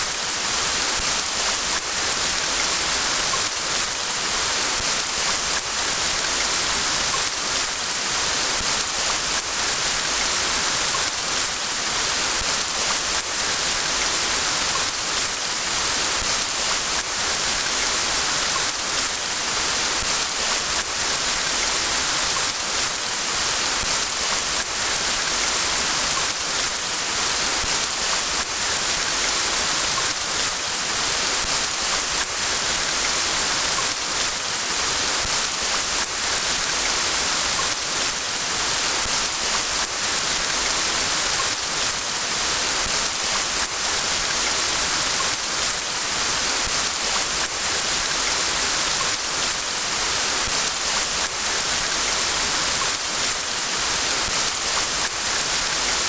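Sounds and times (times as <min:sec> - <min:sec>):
steady rain hiss: 0:00.0 - 0:56.0.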